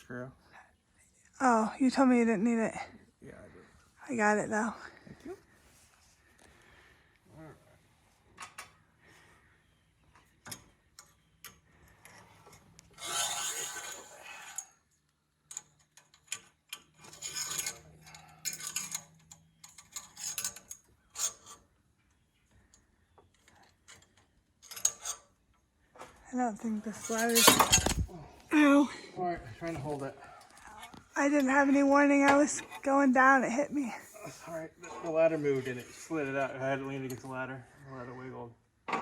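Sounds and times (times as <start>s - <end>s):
screw scraping and rasping: 12.0s - 14.9s, 15.5s - 21.7s, 23.4s - 25.4s, 26.9s - 28.1s.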